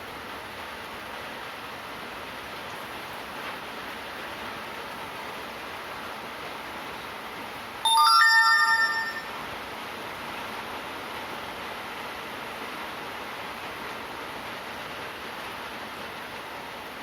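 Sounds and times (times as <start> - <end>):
rain falling: 0.0 - 17.0
rising electronic chime: 7.9 - 9.3.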